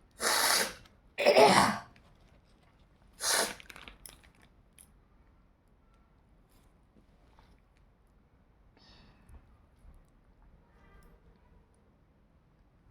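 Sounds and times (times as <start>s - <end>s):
person sneezing: 0.2s - 1.8s, 3.2s - 3.6s.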